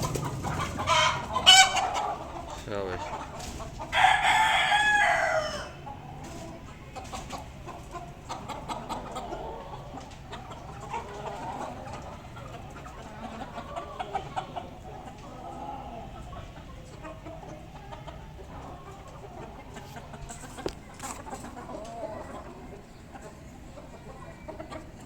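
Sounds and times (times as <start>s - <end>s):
chickens clucking softly: 0.0s - 25.0s
rooster crowing: 3.9s - 5.8s.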